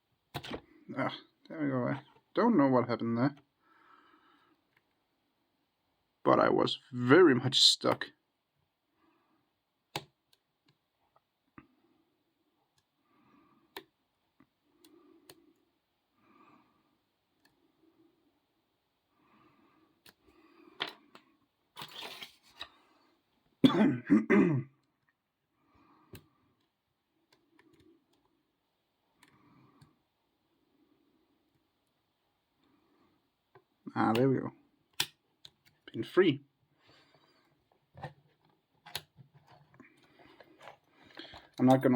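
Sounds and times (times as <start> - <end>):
person clearing throat: 23.6 - 24.7.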